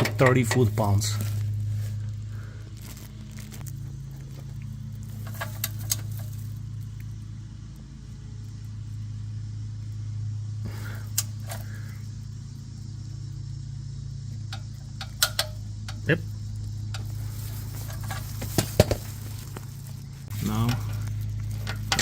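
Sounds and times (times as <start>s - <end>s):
steady low hum: 0.0s - 22.0s
hand tools clicking: 21.6s - 22.0s.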